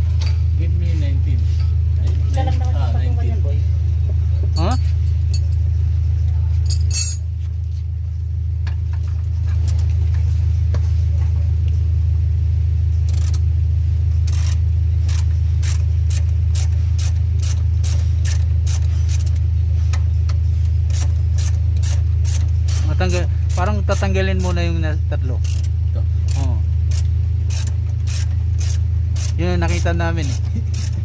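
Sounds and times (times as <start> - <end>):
low rumble: 0.0 - 31.0
ratchet wrench clicking: 13.0 - 13.5, 14.2 - 19.5, 20.8 - 24.6, 25.4 - 31.0.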